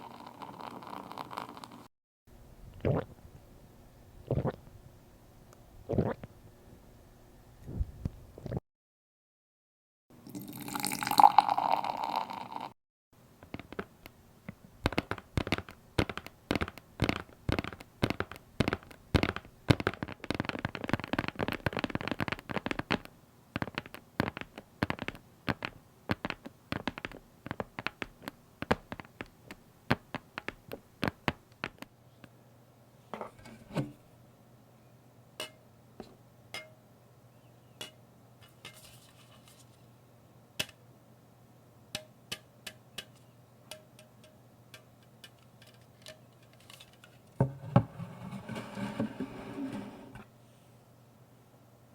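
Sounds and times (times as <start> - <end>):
rapid small clicks and crackles: 13.3 - 31.9.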